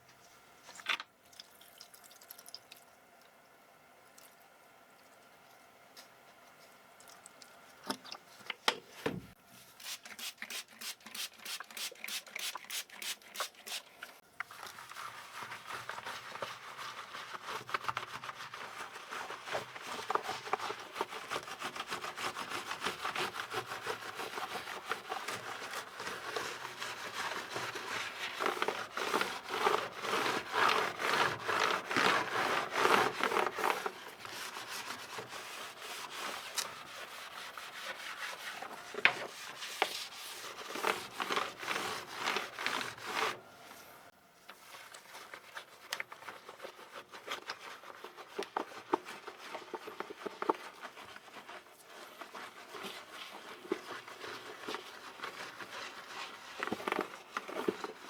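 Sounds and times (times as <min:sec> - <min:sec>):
scrubbing strokes on keyboard: 0:09.6 - 0:43.4, 0:44.6 - 0:58.0.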